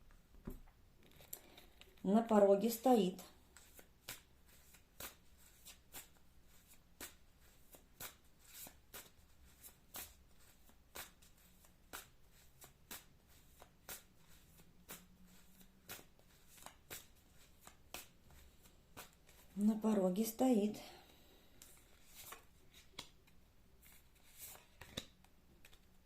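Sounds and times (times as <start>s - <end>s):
cards being shuffled: 3.5s - 19.6s, 21.6s - 26.0s.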